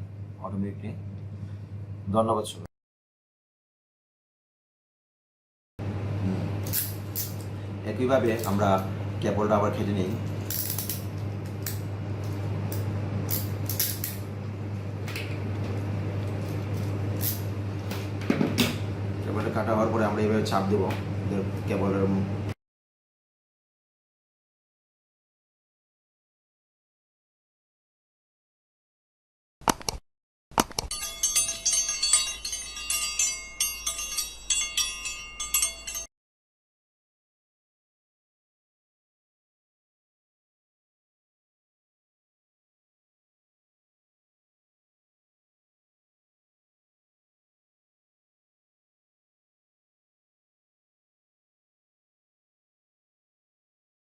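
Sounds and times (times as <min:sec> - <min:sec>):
steady low hum: 0:00.0 - 0:02.7, 0:05.8 - 0:22.6
bright bell chiming: 0:30.9 - 0:36.1.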